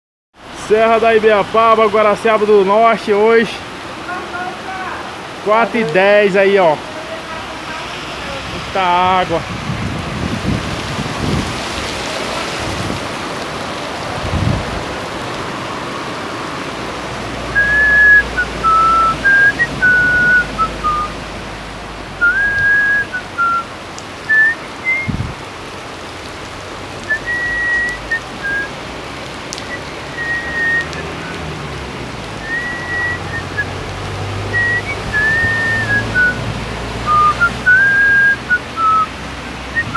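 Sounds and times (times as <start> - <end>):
heavy rain: 0.4 - 39.9
whistled tune: 17.6 - 21.1, 22.2 - 23.6, 24.3 - 25.2, 27.1 - 28.7, 29.6 - 31.4, 32.4 - 33.7, 34.5 - 36.4, 37.1 - 39.1.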